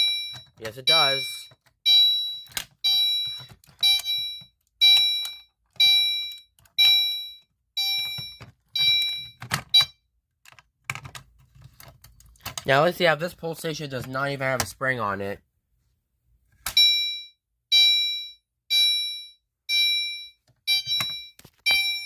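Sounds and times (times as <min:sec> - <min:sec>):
fire alarm chime: 0:00.0 - 0:10.0, 0:16.8 - 0:22.0.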